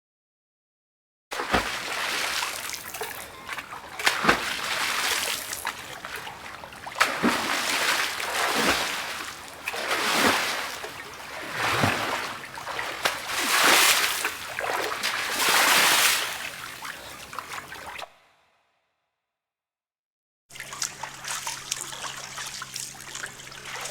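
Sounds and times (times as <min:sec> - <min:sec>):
water falling and splashing: 0:01.6 - 0:16.4.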